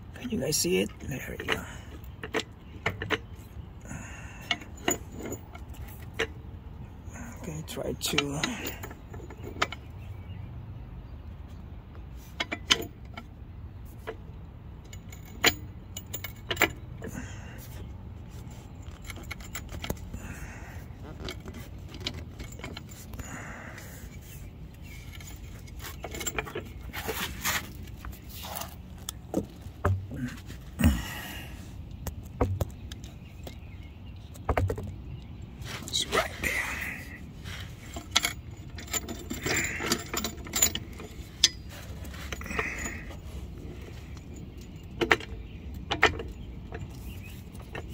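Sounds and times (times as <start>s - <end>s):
floor jack metal clinks: 37.8s - 47.9s.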